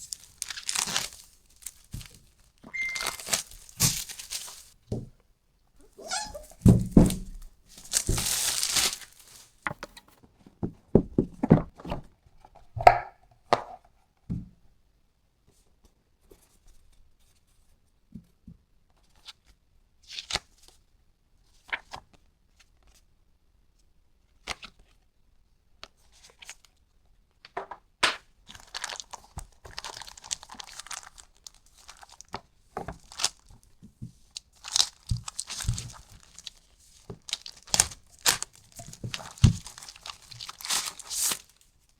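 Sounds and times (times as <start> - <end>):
paper and plastic crinkling: 0.0 - 4.8, 6.0 - 9.9, 28.5 - 41.9
box knocks and thuds: 6.5 - 8.4.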